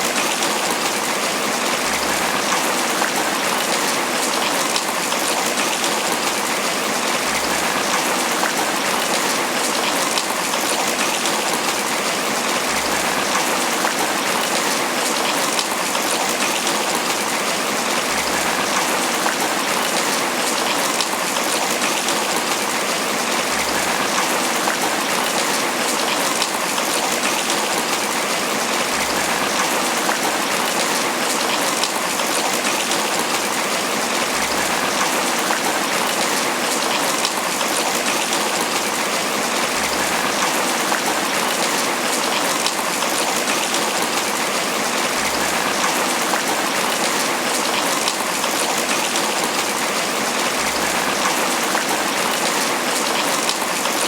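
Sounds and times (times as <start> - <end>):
rain pattering on leaves: 0.0 - 54.0.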